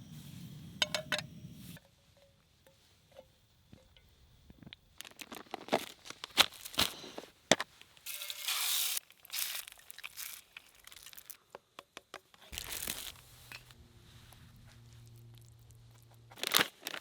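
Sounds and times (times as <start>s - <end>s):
crinkling rustling handling: 5.0s - 11.4s, 12.3s - 17.0s
low steady hum: 12.6s - 17.0s.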